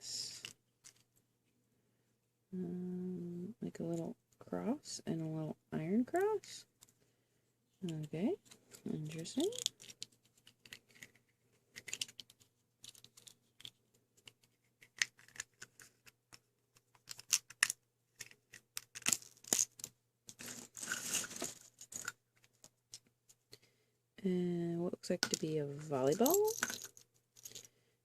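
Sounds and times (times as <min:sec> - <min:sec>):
small charms clicking and clattering: 0:09.1 - 0:16.1, 0:26.0 - 0:27.6
rustling: 0:19.1 - 0:23.4.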